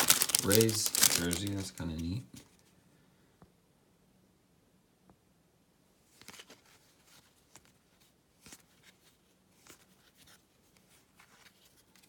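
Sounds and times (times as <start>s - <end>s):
cards flipped by hand: 6.2s - 7.8s, 8.4s - 9.0s.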